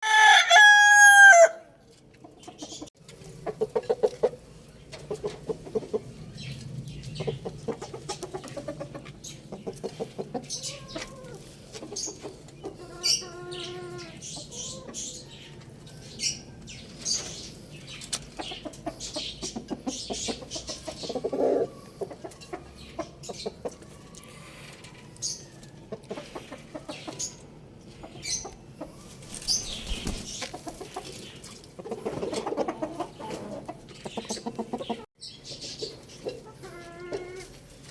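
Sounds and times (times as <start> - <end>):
rooster crowing: 0.0 - 1.7
chickens clucking: 1.8 - 37.9.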